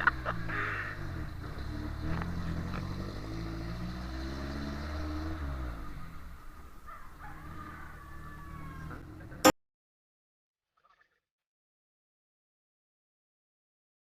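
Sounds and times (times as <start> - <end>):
vehicle engine running: 0.0 - 9.5.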